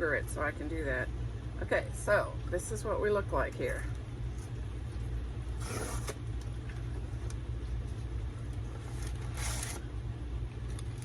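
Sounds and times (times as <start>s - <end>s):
paper rustling: 5.6s - 6.2s, 8.6s - 9.9s.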